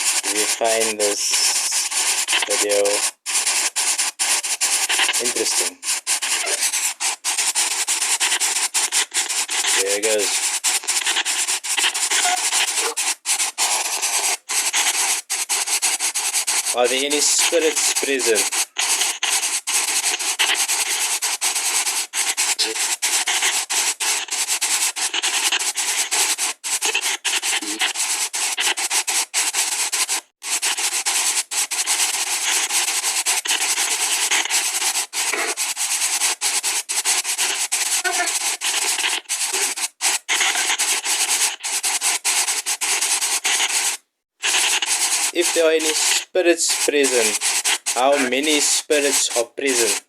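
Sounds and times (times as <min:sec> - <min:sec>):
white noise hiss: 0:00.0 - 0:15.0, 0:16.2 - 0:21.4, 0:22.2 - 0:23.4, 0:44.4 - 0:50.0.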